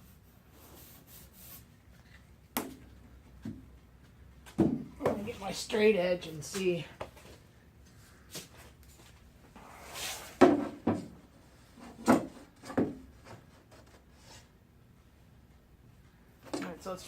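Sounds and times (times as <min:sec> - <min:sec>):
straightedge scraping panel: 0:09.6 - 0:10.6.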